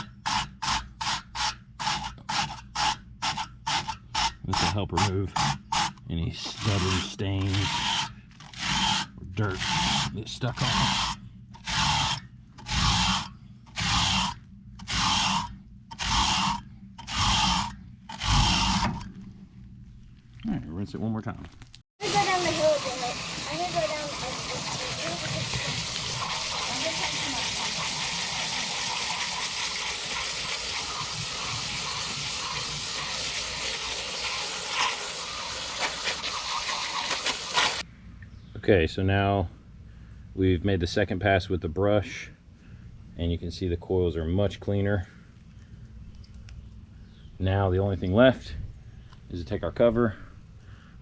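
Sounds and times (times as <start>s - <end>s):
brush scrubbing metal fins: 0.0s - 18.9s, 22.1s - 37.8s
garden hose spraying water: 22.0s - 37.9s.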